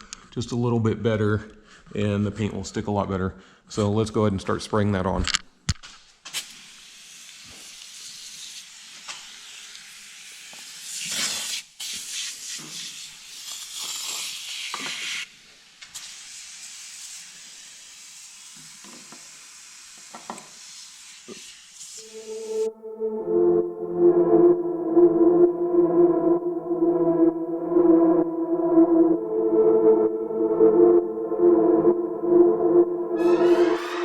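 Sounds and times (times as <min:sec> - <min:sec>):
aerosol can spraying: 0:06.3 - 0:15.2.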